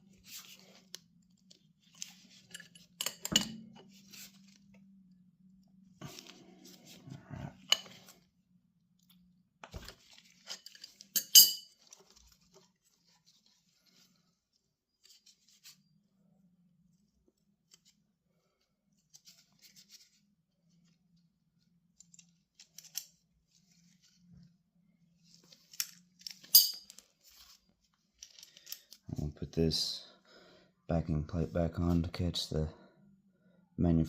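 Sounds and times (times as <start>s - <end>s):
metallic clicks of tool handling: 2.5s - 3.6s, 25.7s - 27.0s.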